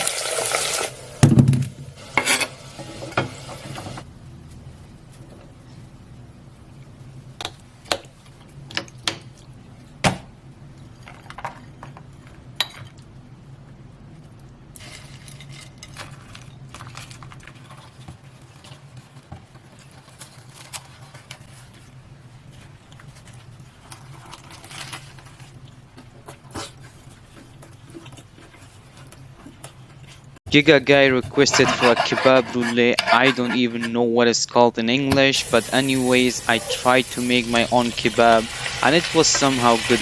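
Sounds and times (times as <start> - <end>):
steady low hum: 1.0 - 15.1
scraping and rustling: 14.8 - 30.4, 31.1 - 34.0.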